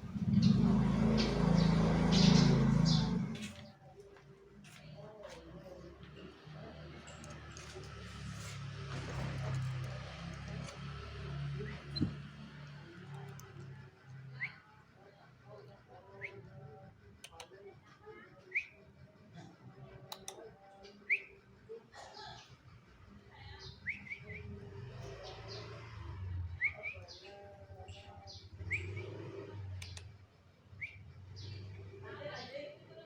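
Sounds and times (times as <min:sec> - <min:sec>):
canaries chirping and singing: 0:00.0 - 0:03.7
sharp clicks: 0:17.2 - 0:17.7, 0:20.0 - 0:20.5, 0:29.6 - 0:30.2.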